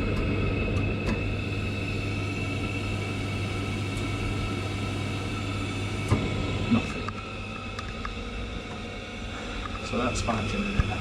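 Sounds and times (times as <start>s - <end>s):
boiler fan humming: 0.0s - 11.0s.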